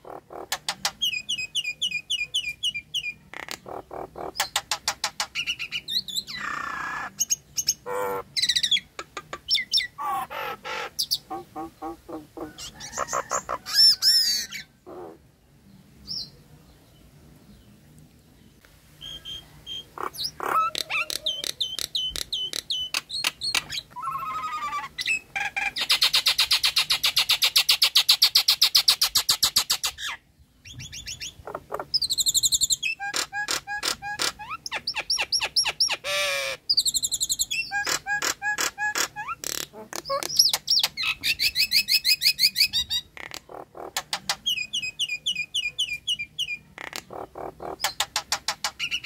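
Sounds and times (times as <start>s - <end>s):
myna calling with whistles: 19.0s - 25.4s.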